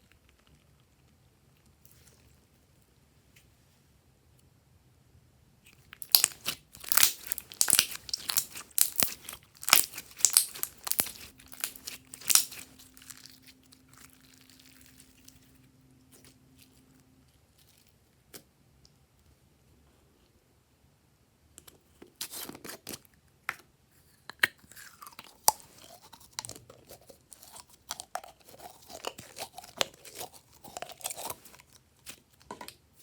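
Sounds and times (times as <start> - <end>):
crisp packaging crunching: 5.9 - 16.8, 24.8 - 32.4.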